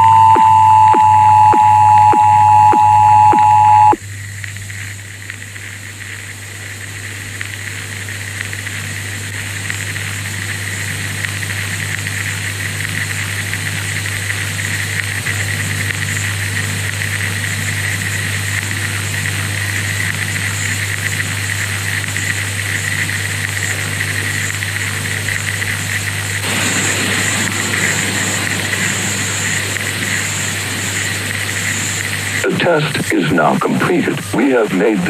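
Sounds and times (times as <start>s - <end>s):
loud steady alarm tone: 0.0s - 4.0s, 26.4s - 32.8s
low hum: 0.0s - 4.2s, 25.6s - 35.0s
static hiss: 0.0s - 35.0s.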